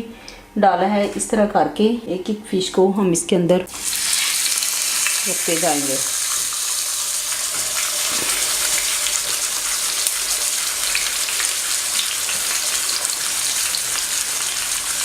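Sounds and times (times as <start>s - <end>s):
fish sizzling in oil: 3.7s - 15.0s.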